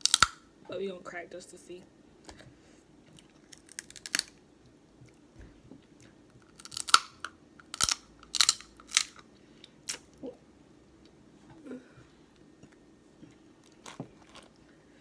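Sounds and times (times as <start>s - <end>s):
crab shell cracking: 0.0s - 0.4s, 3.4s - 4.4s, 6.4s - 9.2s.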